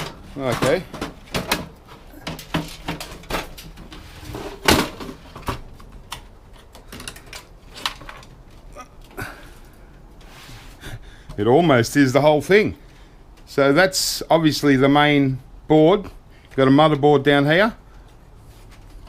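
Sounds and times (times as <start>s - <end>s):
clicks and knocks of equipment handled: 0.0s - 9.2s.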